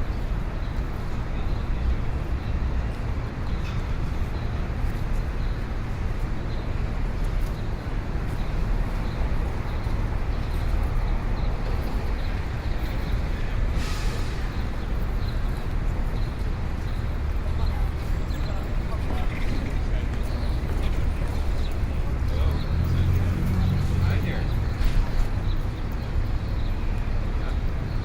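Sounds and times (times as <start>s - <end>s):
traffic rumble: 0.0s - 28.0s
short hiss: 13.8s - 14.4s.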